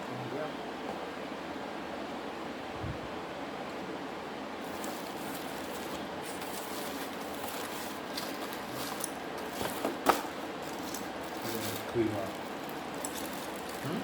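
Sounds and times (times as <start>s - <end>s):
steady background hiss: 0.0s - 14.0s
kitchen utensils being handled: 4.8s - 13.8s.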